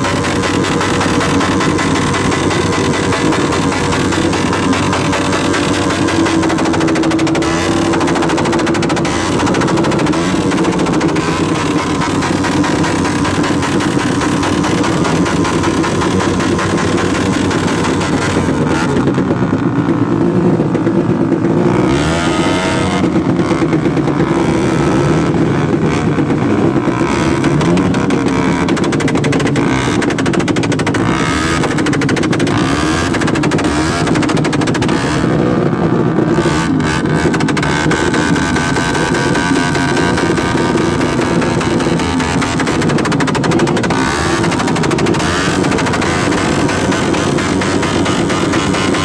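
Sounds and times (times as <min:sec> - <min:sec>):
engine running loud: 0:00.0 - 0:49.0.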